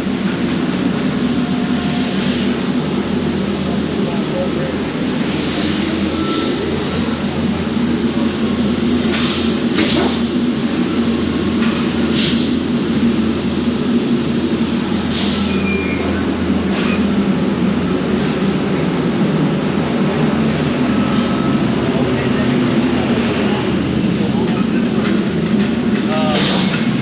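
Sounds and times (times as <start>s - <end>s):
factory machinery drone: 0.0s - 27.0s
hissing bursts of air: 12.1s - 12.7s.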